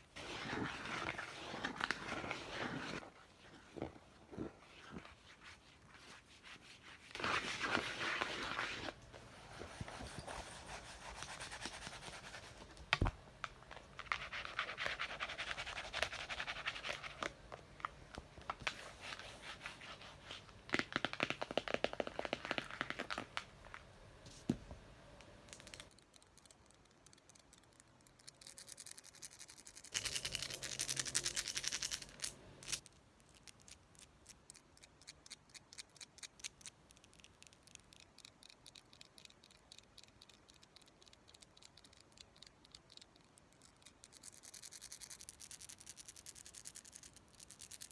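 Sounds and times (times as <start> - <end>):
scratching on a book: 0.2 - 12.8, 14.0 - 17.2.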